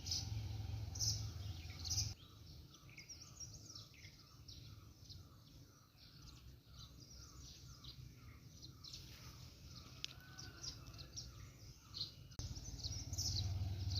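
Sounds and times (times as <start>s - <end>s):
small birds chirping: 0.0s - 13.9s.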